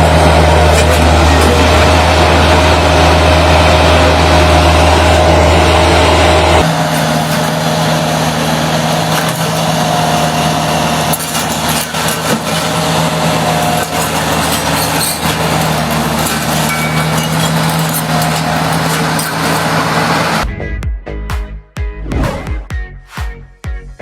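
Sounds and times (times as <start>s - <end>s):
bulldozer diesel engine running: 0.0s - 20.7s
knocks and clatter: 8.9s - 9.8s, 11.0s - 12.9s, 13.5s - 20.1s.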